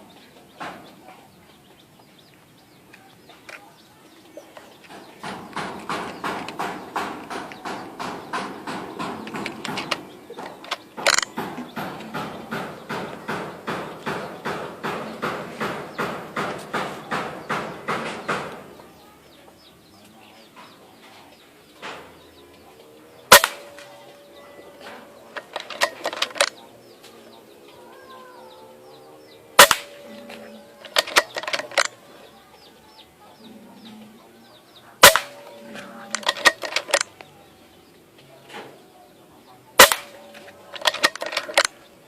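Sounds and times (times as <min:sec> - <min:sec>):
air rifle shot crack: 0:23.3 - 0:24.0, 0:29.6 - 0:30.2, 0:35.0 - 0:37.0, 0:39.8 - 0:41.0
side lever clicks: 0:24.8 - 0:26.6, 0:29.6 - 0:32.0, 0:35.0 - 0:37.2.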